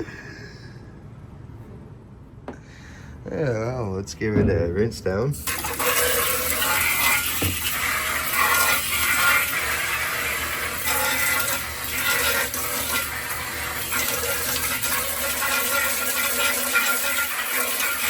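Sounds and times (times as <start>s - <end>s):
water spraying and splashing: 5.4s - 18.0s.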